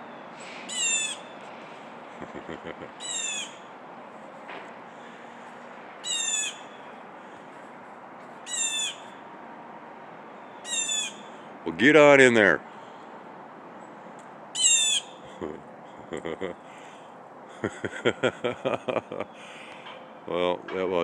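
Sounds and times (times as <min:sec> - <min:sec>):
bird alarm call: 0:00.0 - 0:01.4, 0:03.0 - 0:03.7, 0:06.0 - 0:07.0, 0:08.5 - 0:09.1, 0:10.4 - 0:11.4, 0:14.6 - 0:15.4.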